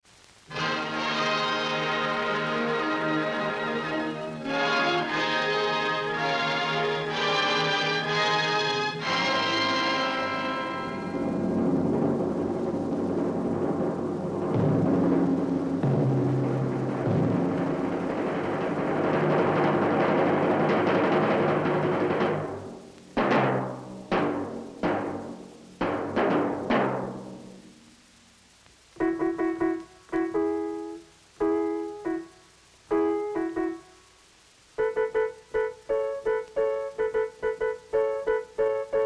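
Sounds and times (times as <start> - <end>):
sustained orchestral passage: 0.5 - 22.2
staccato keyboard notes: 0.5 - 27.6, 34.8 - 39.0.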